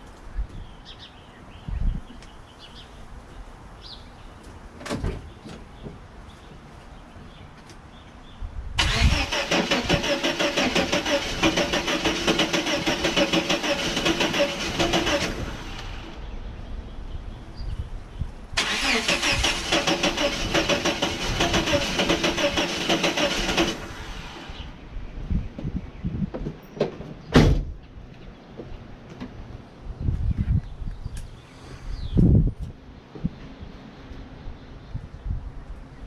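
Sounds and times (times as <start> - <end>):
engine cranking without starting: 8.8 - 16.2, 18.6 - 24.8.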